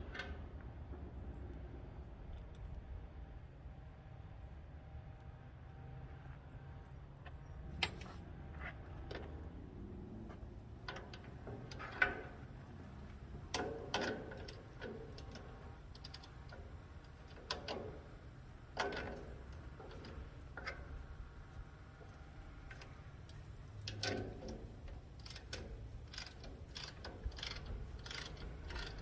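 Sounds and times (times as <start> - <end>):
metallic clanks and taps: 10.3 - 29.0.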